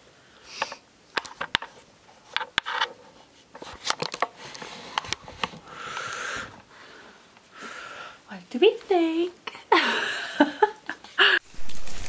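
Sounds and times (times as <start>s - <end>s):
brief rustling: 11.4s - 12.0s.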